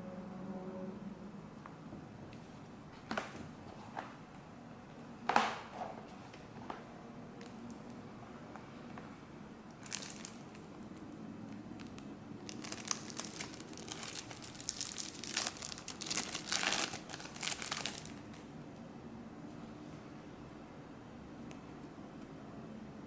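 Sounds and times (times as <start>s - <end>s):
plastic packaging crinkling: 9.8s - 11.0s, 11.7s - 18.4s.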